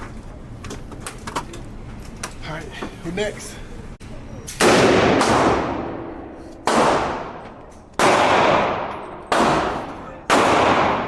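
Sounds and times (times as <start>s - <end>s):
gunshots with echoing tail: 4.6s - 11.0s.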